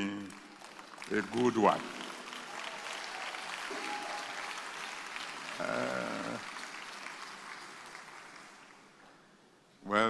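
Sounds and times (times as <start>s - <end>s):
crowd applauding and cheering: 0.0s - 9.0s.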